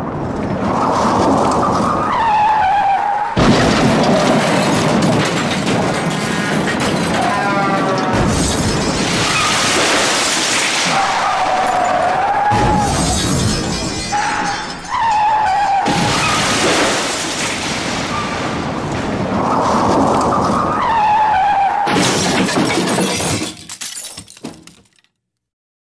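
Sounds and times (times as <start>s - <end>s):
car crashing: 0.0s - 25.1s
glass shattering: 3.4s - 18.6s, 21.9s - 25.1s
wreckage clattering: 3.4s - 19.2s
tyres screeching: 10.4s - 16.6s.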